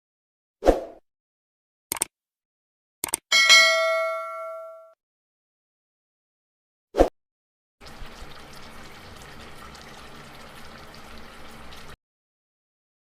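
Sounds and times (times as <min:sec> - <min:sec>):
liquid running: 0:07.8 - 0:12.0.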